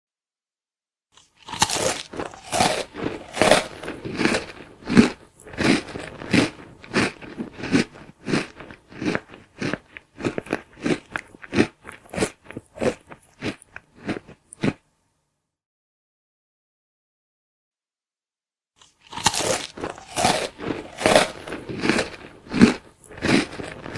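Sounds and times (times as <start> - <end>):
person chewing crunchy food: 1.2 - 14.8, 18.8 - 23.9.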